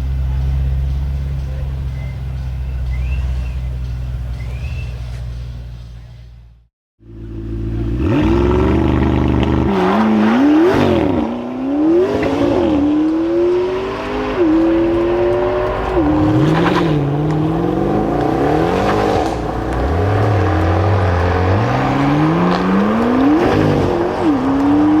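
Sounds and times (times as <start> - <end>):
car engine accelerating through gears: 0.0 - 5.8, 7.0 - 25.0.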